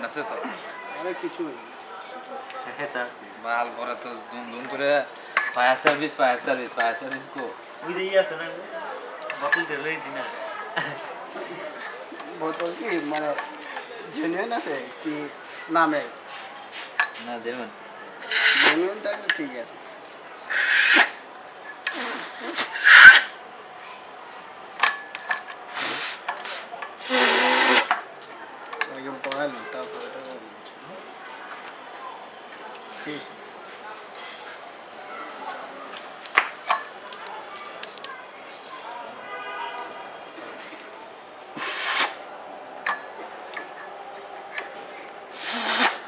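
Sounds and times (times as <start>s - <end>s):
metal parts scraping: 18.2s - 18.8s, 20.5s - 21.2s, 21.9s - 23.3s
spraying hiss: 18.2s - 18.8s, 20.5s - 21.2s, 21.9s - 23.3s, 25.6s - 28.0s, 41.6s - 42.2s, 45.3s - 46.0s.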